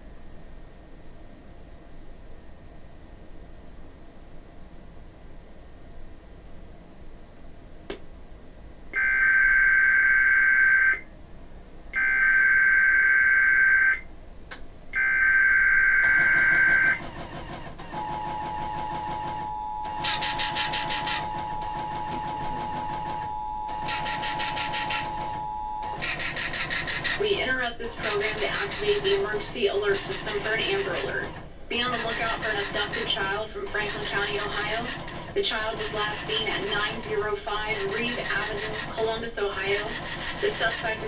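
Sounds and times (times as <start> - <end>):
two-tone attention signal: 15.0 - 17.0, 18.0 - 35.0, 35.6 - 41.0
noisy broadcast background: 19.3 - 41.0.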